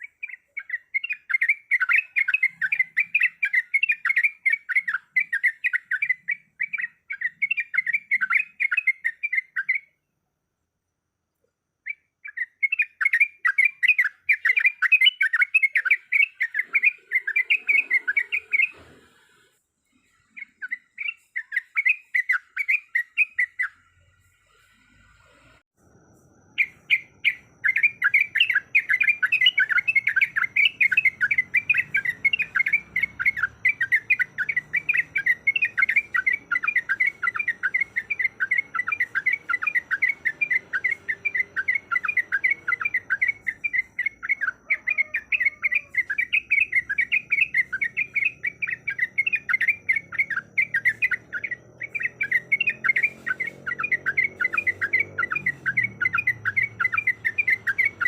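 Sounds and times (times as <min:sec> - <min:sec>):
bird chattering call: 0:12.2 - 0:18.8, 0:26.6 - 0:58.0.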